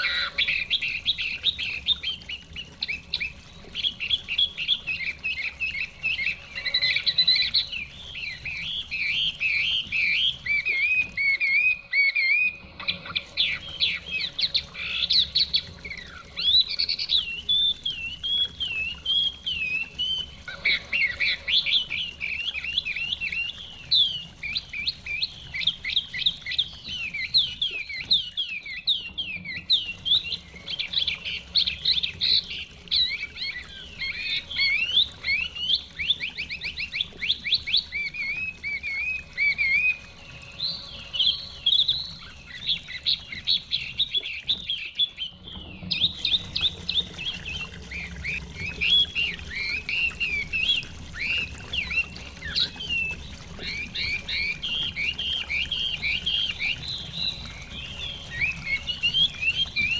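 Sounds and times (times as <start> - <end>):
bird whistling and trilling: 0.0 - 59.9.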